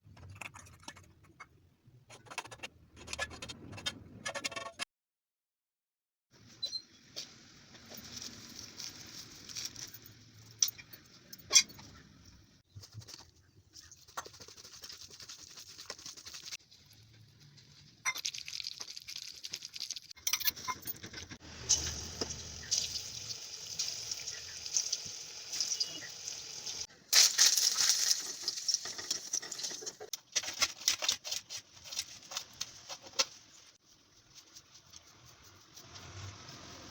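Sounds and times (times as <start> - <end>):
hot oil sizzling: 21.4 - 30.1.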